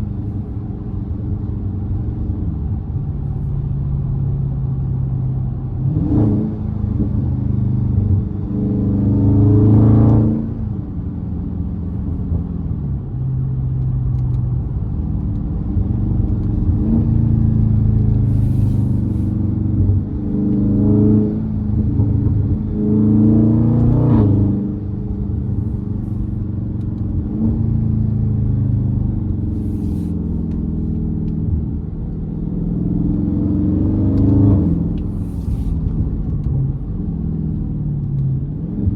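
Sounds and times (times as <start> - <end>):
car engine accelerating hard: 5.6 - 10.9, 14.1 - 38.9.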